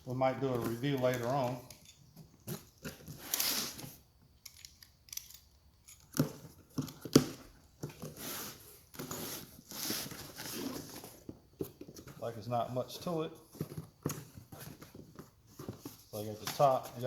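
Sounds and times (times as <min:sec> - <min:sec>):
cardboard scraping and rustling: 0:07.8 - 0:12.3.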